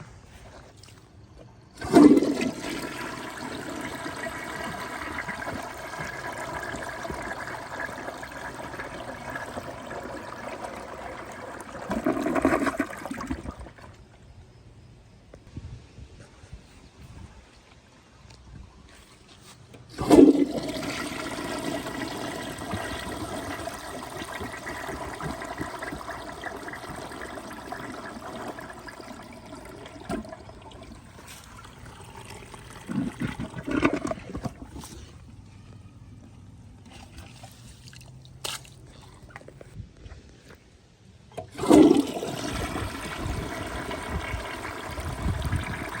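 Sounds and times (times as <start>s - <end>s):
toilet flushing: 1.7s - 14.1s, 19.9s - 35.2s, 41.4s - 46.0s
water gurgling: 1.8s - 14.1s, 19.9s - 34.9s, 41.4s - 46.0s.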